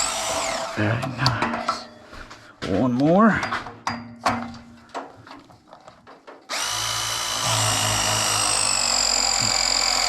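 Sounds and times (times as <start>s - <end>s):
power drill running: 0.0s - 0.8s, 6.5s - 10.0s.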